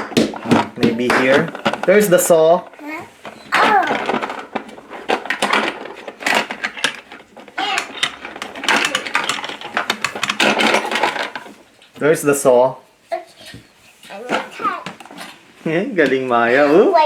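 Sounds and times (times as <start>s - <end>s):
plastic toy tools rattling in a drawer: 0.0s - 11.6s.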